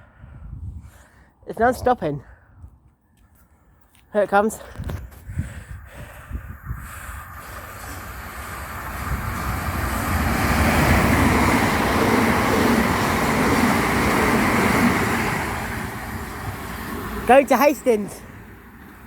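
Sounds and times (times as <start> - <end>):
electric train passing: 6.8 - 19.0.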